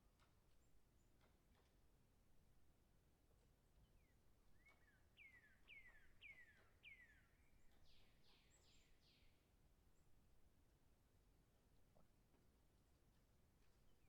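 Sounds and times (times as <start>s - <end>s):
faint whistled bird calls: 4.0s - 9.3s.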